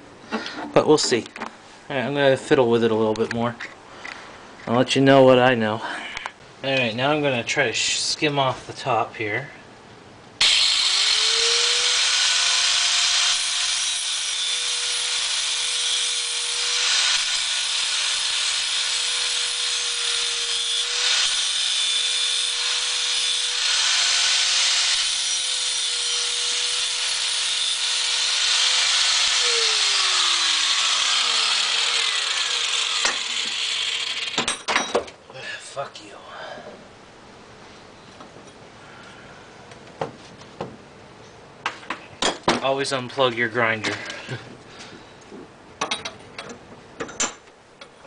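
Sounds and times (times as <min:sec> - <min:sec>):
angle grinder grinding: 0:10.4 - 0:34.6
grinder disc spinning down: 0:28.5 - 0:34.4.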